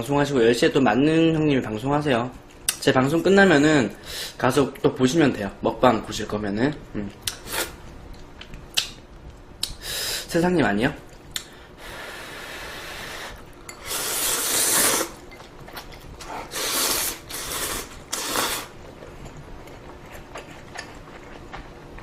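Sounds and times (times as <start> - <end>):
person slurping noodles: 11.9 - 15.2, 16.4 - 18.7.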